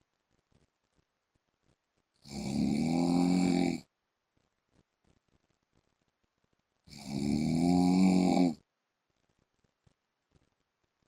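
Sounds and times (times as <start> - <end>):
man snoring: 2.2 - 3.9, 6.9 - 8.6.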